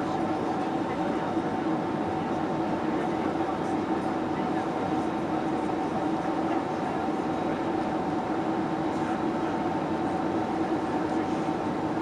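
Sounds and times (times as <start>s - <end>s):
aircraft cabin drone: 0.0s - 12.0s.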